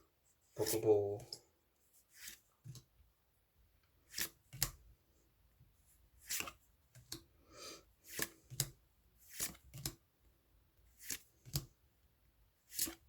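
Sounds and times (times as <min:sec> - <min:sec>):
cards swiping off a stack: 0:04.1 - 0:04.7, 0:06.2 - 0:07.2, 0:08.1 - 0:08.7, 0:09.3 - 0:10.0, 0:11.0 - 0:11.7, 0:12.7 - 0:13.0.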